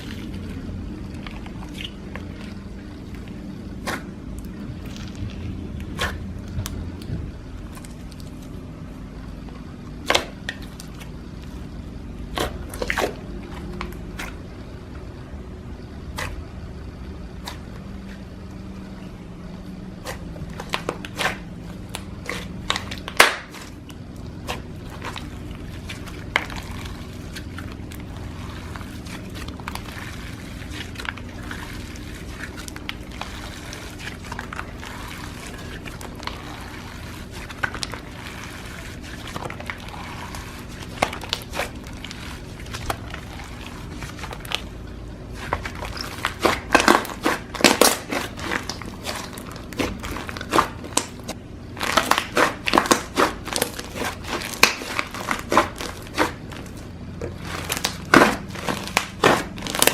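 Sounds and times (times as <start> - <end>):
slime squishing: 0.0 - 15.2, 16.0 - 59.9
slime crackling pops: 20.7 - 23.6, 57.6 - 59.9.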